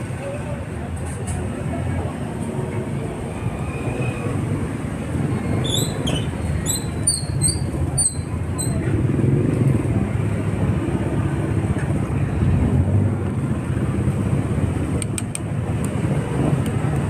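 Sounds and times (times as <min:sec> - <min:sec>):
street traffic rumble: 0:00.0 - 0:17.0
sharp clicks: 0:15.0 - 0:16.0.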